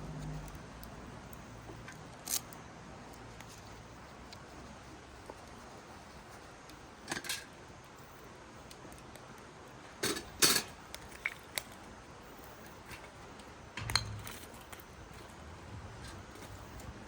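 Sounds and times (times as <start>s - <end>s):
metal cookware clinking: 13.8s - 14.6s.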